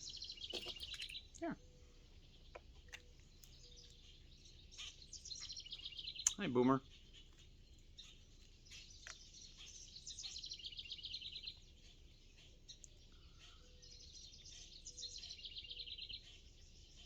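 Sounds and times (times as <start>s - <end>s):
faint songbird trill: 0.0s - 17.0s.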